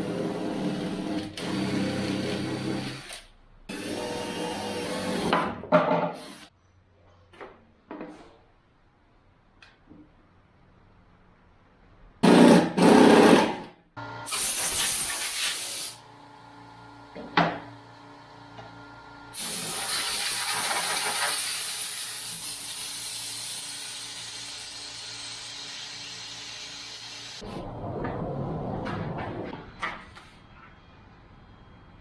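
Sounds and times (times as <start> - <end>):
power tool running: 0.0 - 5.5
hiss: 14.3 - 16.0, 19.4 - 27.4.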